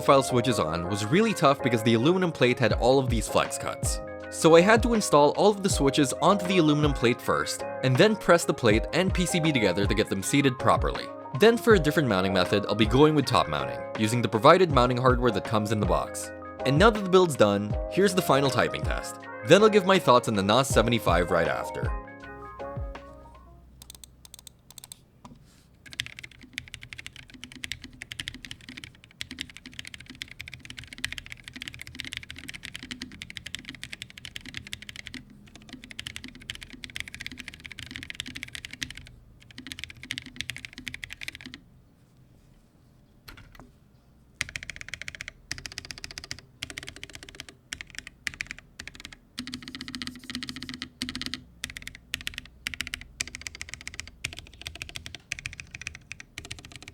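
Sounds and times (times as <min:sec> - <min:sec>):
mechanical keyboard typing: 0:23.8 - 0:41.6, 0:44.4 - 0:56.9.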